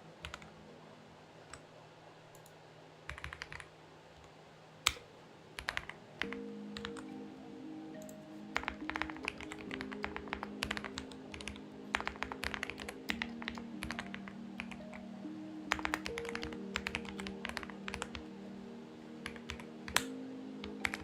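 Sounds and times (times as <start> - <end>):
soft background music: 5.8 - 21.0.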